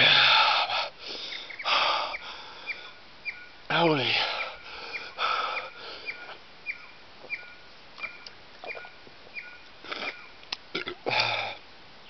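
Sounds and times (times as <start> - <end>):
man breathing hard: 0.0 - 3.0, 4.1 - 6.4, 11.1 - 11.6
small bird chirping: 1.2 - 10.4.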